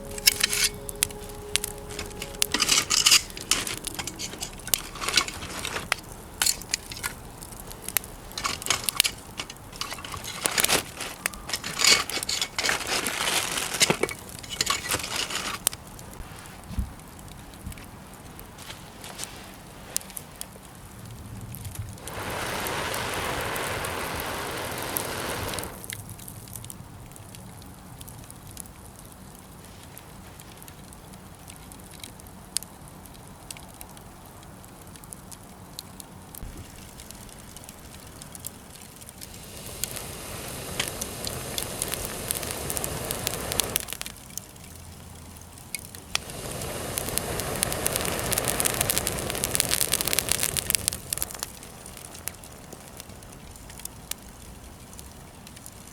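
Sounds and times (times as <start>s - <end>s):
steady rushing hiss: 0.0s - 17.5s, 21.8s - 26.2s, 36.4s - 44.3s, 46.0s - 54.8s
wood fire crackling and popping: 0.0s - 55.9s.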